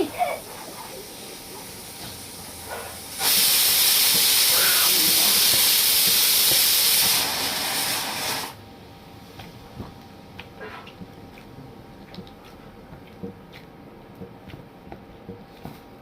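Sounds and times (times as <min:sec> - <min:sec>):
pressure cooker whistle hissing: 0:03.1 - 0:08.6.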